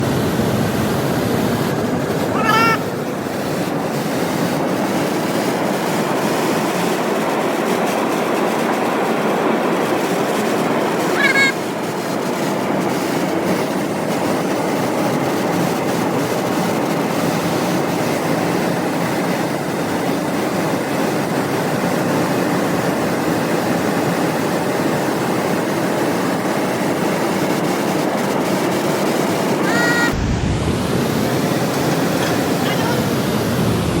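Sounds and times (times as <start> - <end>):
machinery rushing din: 10.0 - 14.5, 29.4 - 34.0.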